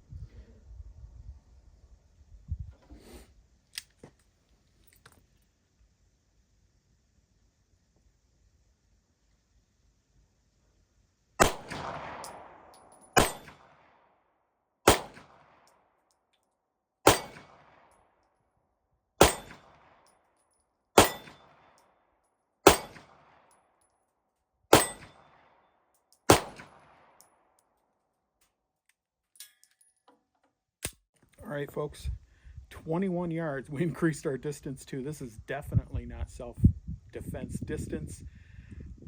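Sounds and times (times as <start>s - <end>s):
pistol shots with echo: 11.4s - 13.8s, 14.9s - 15.5s, 17.0s - 17.9s, 19.2s - 20.0s, 21.0s - 21.7s, 22.6s - 23.4s, 24.7s - 25.5s, 26.3s - 27.2s.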